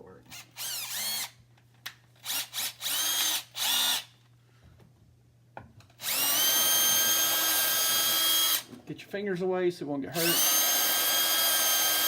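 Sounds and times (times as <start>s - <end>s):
electric drill spinning: 0.3s - 1.4s, 2.2s - 4.1s, 6.0s - 8.7s, 10.2s - 12.0s.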